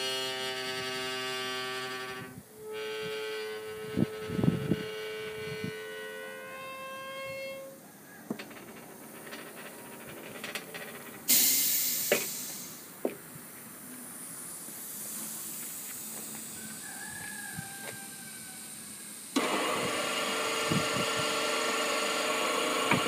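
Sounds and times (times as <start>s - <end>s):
workshop machinery whine: 0.0s - 23.0s
hissing air burst: 11.2s - 13.0s, 13.8s - 21.6s.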